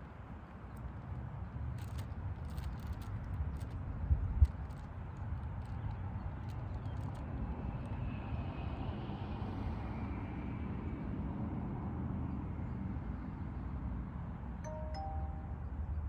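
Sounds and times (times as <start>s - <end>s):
traffic rumble: 0.0s - 12.2s
two-note tone: 14.7s - 15.8s.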